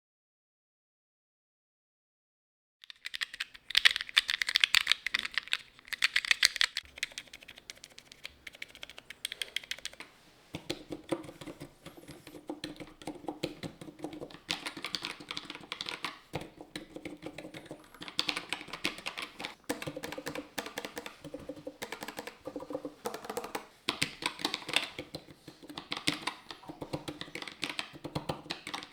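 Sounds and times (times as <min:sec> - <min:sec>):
mechanical keyboard typing: 0:02.8 - 0:28.9.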